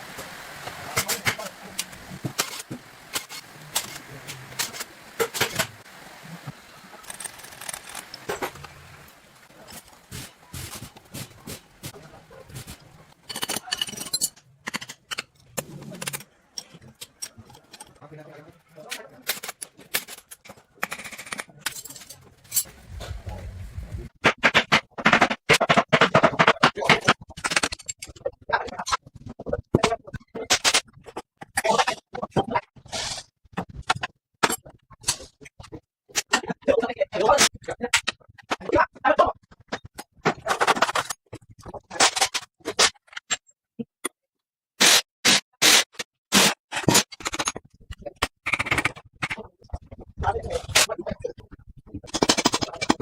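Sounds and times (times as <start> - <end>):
hand tool scrapes and clicks: 1.0 - 5.7.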